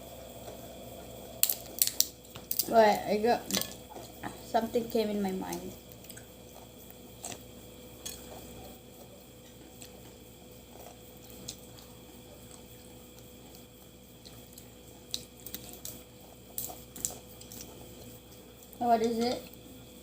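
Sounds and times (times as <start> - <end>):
faint steady hum: 0.0 - 20.0
wet chewing sounds: 3.5 - 4.5, 5.4 - 20.0.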